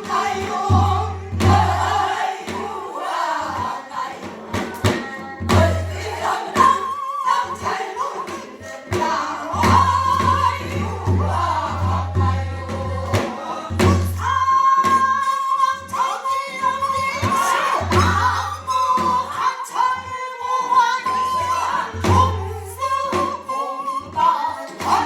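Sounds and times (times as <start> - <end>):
drum strokes: 0.0 - 15.1, 17.2 - 18.4
folk song with wide vibrato: 0.0 - 25.0.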